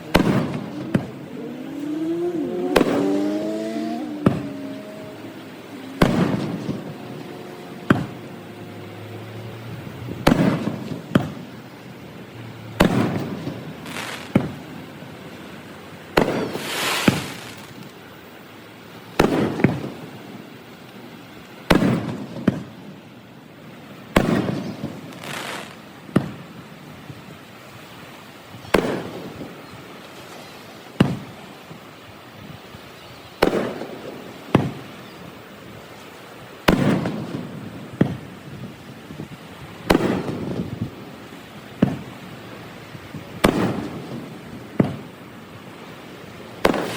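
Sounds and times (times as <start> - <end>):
fireworks banging: 0.0 - 15.0, 16.0 - 18.1, 19.1 - 20.4, 21.6 - 23.0, 24.0 - 26.6, 28.6 - 31.5, 33.4 - 35.2, 36.1 - 42.2, 43.1 - 45.2, 46.5 - 46.9
crackling firework hiss: 0.0 - 46.9.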